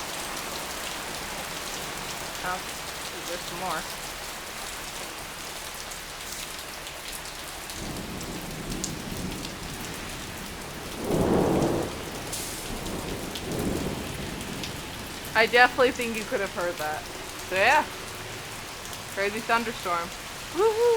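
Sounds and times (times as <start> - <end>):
heavy rain pouring: 0.0 - 20.9
thunder rumbling: 7.8 - 20.5.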